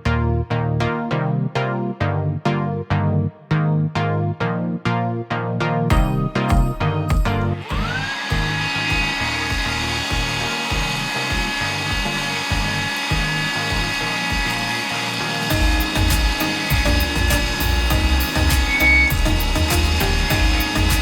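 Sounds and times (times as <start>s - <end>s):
background music with steady beat: 0.0s - 21.0s
vacuum cleaner motor whine: 7.5s - 21.0s.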